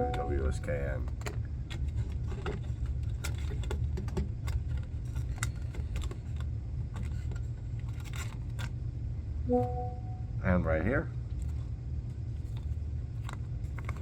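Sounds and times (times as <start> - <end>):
steady low hum: 0.0 - 1.9, 8.8 - 14.0.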